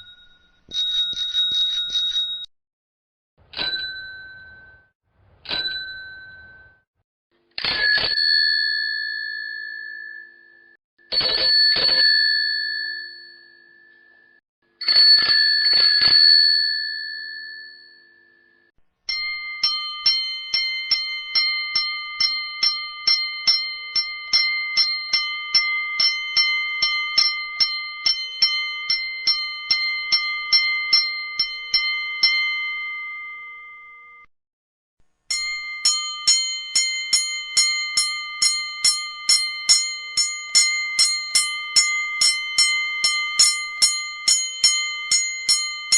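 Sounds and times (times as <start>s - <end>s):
bell struck rapidly: 0.0s - 2.5s, 19.1s - 33.6s, 35.3s - 45.9s
bicycle bell double rings: 0.0s - 2.5s, 35.3s - 45.9s
bright bell rung rapidly: 0.0s - 2.5s, 19.1s - 34.0s, 35.3s - 45.9s.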